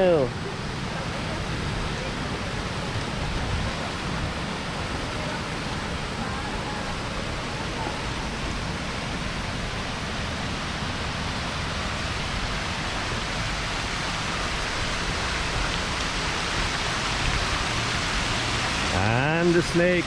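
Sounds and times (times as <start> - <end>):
fountain water splashing: 0.0 - 20.0.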